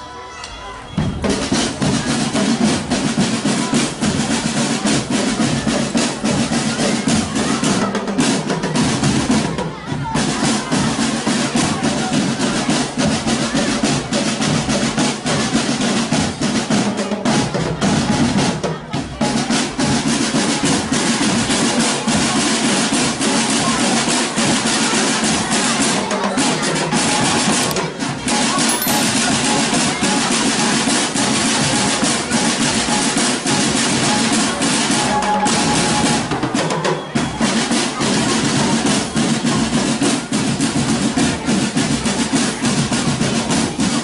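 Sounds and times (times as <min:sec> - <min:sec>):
marching drum band playing: 0:01.0 - 0:44.0
snare drums beating: 0:01.1 - 0:09.6, 0:24.2 - 0:36.8.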